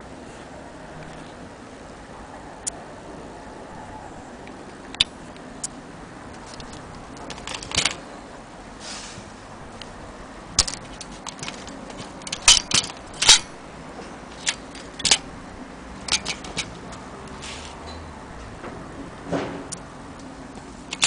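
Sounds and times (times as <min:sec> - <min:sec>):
metal mechanism clicks and clacks: 0:06.3 - 0:08.0, 0:10.6 - 0:15.3, 0:16.0 - 0:17.4.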